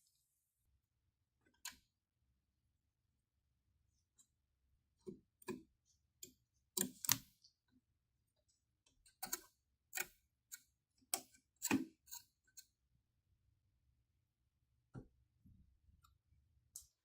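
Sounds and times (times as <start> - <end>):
clicks and light knocks of tools: 8.8 - 12.8.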